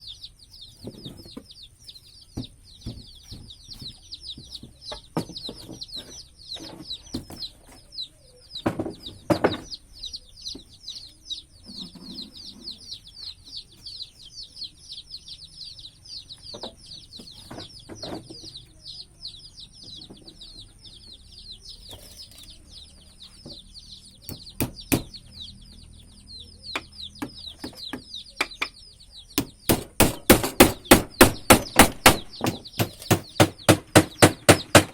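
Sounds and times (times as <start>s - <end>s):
bird chirping fast: 0.0s - 34.9s
knocks and taps: 26.7s - 28.8s.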